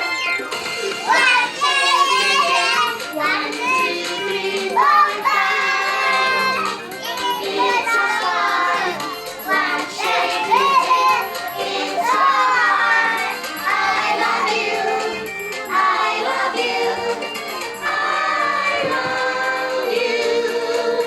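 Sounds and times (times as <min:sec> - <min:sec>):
backing music: 0:00.0 - 0:21.0
children singing: 0:00.0 - 0:21.0.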